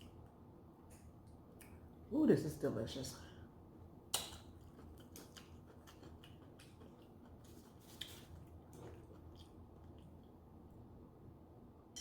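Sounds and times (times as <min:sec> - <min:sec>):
chewing with mouth clicks: 0:04.1 - 0:10.4.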